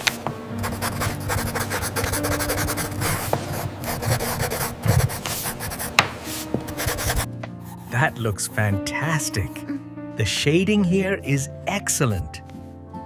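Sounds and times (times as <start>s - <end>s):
pencil scratching on paper: 0.6s - 8.2s.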